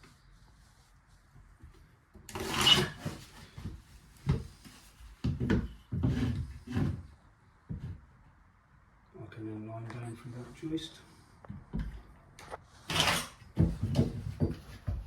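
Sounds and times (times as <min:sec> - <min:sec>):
wooden knocks and rubs: 0:13.6 - 0:15.0.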